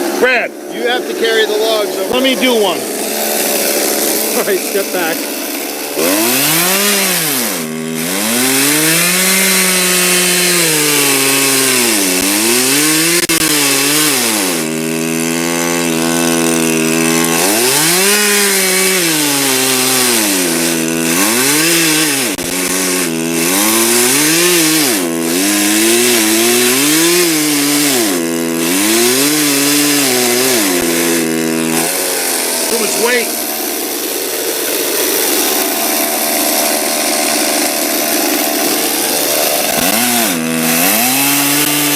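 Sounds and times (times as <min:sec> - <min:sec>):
chainsaw cutting log: 0:00.0 - 0:41.9.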